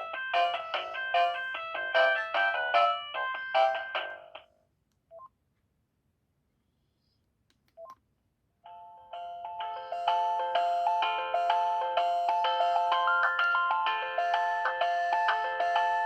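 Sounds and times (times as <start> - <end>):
polyphonic ringtone melody: 0.0 - 4.0, 8.7 - 16.0.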